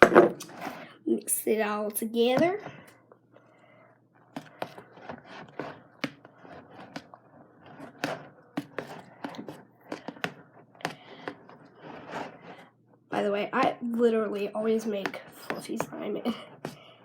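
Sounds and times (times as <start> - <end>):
utensil scraping a bowl: 4.3 - 12.7, 14.8 - 17.0.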